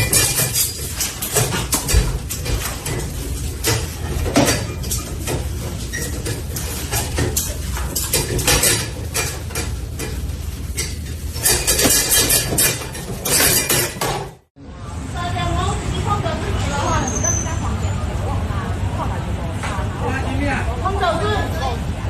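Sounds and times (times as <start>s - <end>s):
clinking and clattering: 0.0s - 14.4s.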